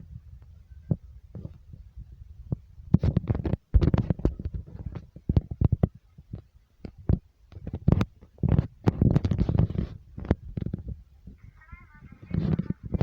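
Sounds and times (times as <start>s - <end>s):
irregular knocking and rattling: 2.5s - 11.0s.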